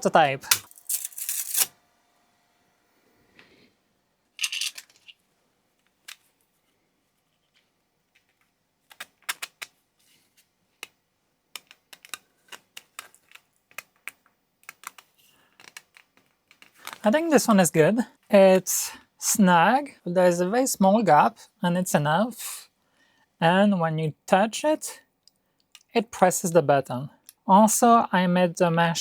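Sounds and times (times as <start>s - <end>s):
plastic parts clicking: 4.4s - 5.2s, 8.2s - 9.8s, 11.6s - 17.0s.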